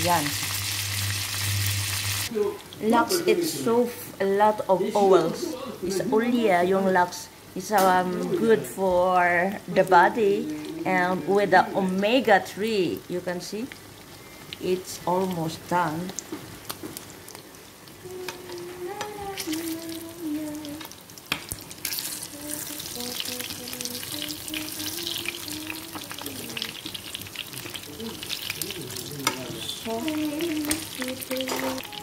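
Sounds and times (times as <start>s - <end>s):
fish sizzling in a pan: 0.0s - 2.3s, 16.0s - 32.0s.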